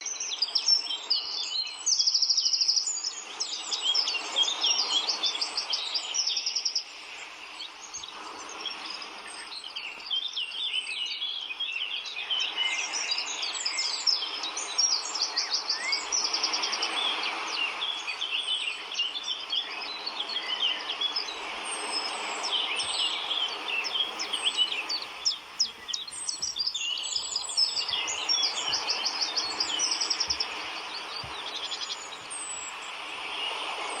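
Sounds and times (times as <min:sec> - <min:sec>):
birds chirping and calling: 0:07.6 - 0:34.0
steady rushing noise: 0:21.6 - 0:34.0.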